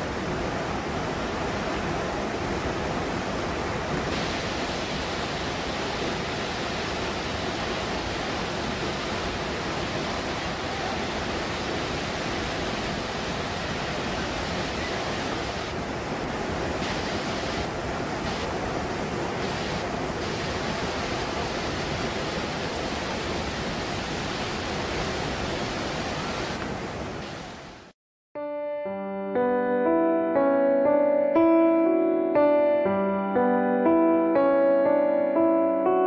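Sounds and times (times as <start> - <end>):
waterfall roaring: 0.0 - 27.9.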